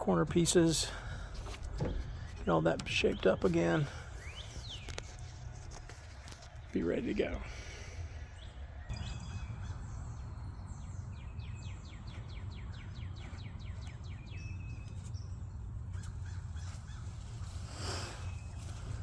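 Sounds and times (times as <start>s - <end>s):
bird chirping: 0.0s - 19.0s
low outdoor rumble: 0.0s - 19.0s.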